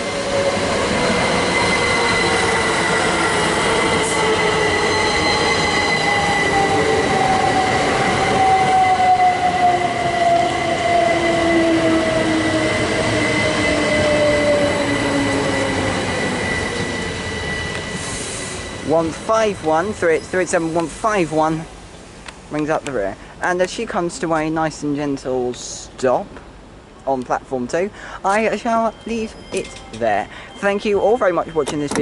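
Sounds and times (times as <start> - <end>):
electric train whine: 0.0 - 22.4
rail noise: 0.0 - 32.0.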